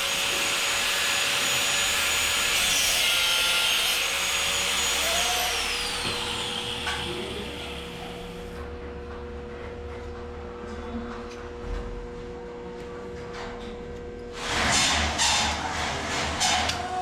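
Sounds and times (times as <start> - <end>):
angle grinder cutting metal: 0.0 - 8.6.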